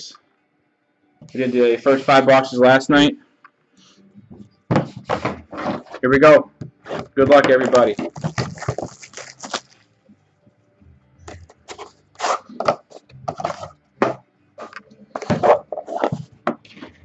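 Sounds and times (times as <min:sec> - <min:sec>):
cardboard scraping: 0:04.9 - 0:06.1, 0:11.4 - 0:17.0
plastic wrap crinkling and tearing: 0:07.9 - 0:09.8.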